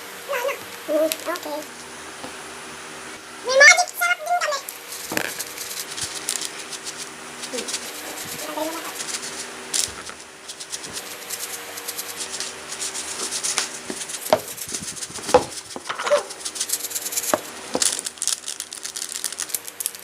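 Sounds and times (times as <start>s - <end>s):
granules rattling: 4.6s - 20.0s
plastic crinkling: 4.6s - 20.0s.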